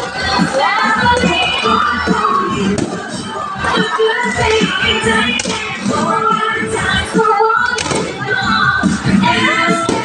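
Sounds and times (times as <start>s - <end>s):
crowd voices: 0.0s - 10.0s
music playing: 0.0s - 10.0s.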